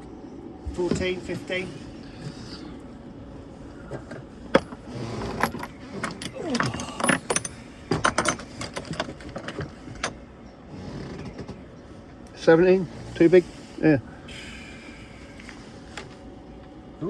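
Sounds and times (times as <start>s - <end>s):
metal spanners clinking: 4.6s - 10.2s.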